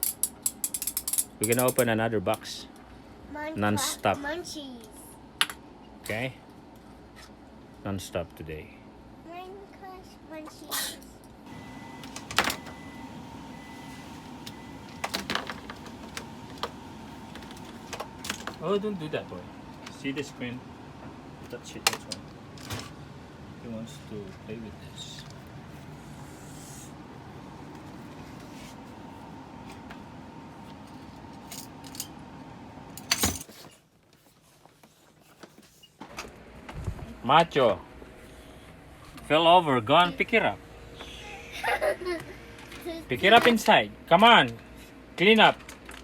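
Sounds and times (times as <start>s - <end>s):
plastic toys clicking: 0.0s - 1.8s
low room hum: 0.0s - 46.0s.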